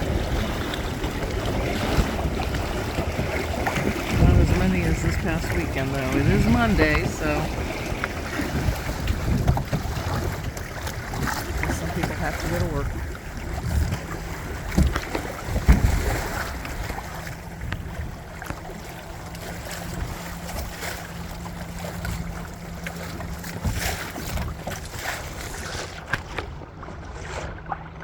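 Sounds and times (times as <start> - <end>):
water washing against hull: 0.0 - 28.0
wind buffeting microphone: 0.0 - 28.0
heavy low thumps: 4.0 - 7.4.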